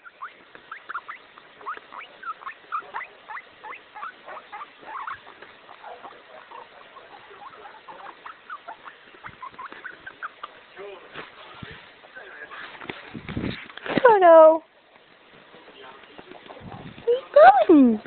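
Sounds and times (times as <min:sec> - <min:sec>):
guinea pig squeaking: 0:00.0 - 0:11.9.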